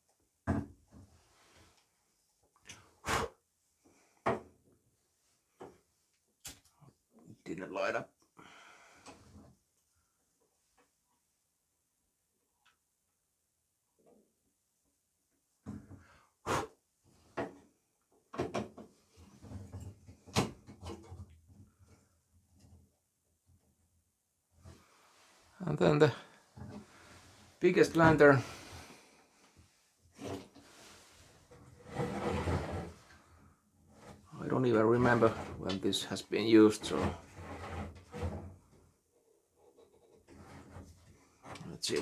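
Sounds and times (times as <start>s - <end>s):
soft scraping: 24.6s - 35.6s.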